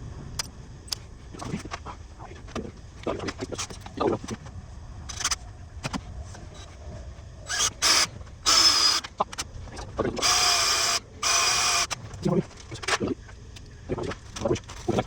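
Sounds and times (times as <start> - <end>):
electric hand drill whining: 7.5 - 9.1, 10.2 - 12.0.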